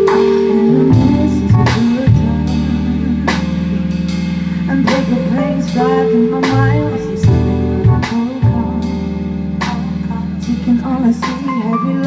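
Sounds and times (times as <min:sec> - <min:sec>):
drum hits: 0:00.0 - 0:11.5
live band playing: 0:00.0 - 0:12.0.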